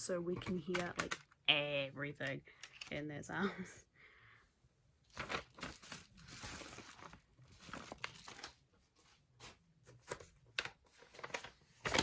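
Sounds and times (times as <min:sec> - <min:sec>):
packaging rustling and crackling: 0:05.1 - 0:08.7, 0:09.4 - 0:12.0.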